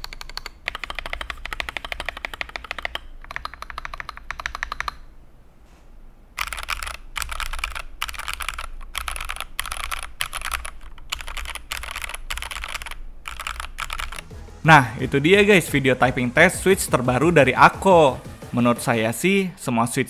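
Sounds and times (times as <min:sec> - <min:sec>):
mechanical keyboard typing: 0:00.0 - 0:05.0, 0:06.4 - 0:14.4.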